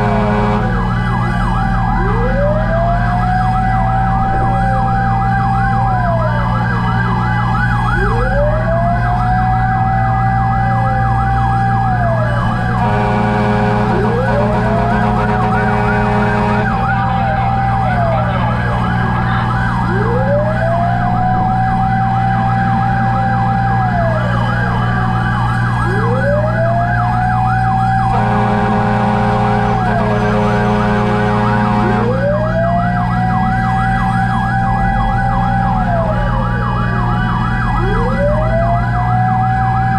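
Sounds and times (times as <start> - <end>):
horn blast: 0.0 - 0.9, 12.8 - 18.6, 28.1 - 32.3
fire truck siren wailing: 0.0 - 39.9
low engine drone: 0.0 - 39.9
siren yelp: 0.0 - 39.9.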